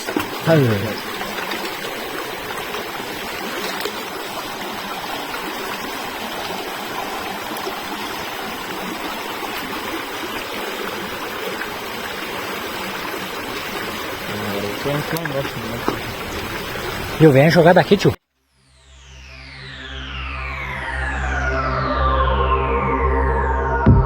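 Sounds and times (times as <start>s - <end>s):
running water rushing: 0.0s - 18.2s.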